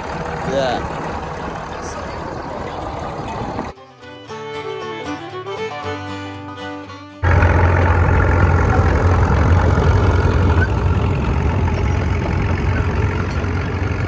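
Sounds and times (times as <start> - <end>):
tractor engine idling: 0.0 - 3.7, 7.2 - 14.0.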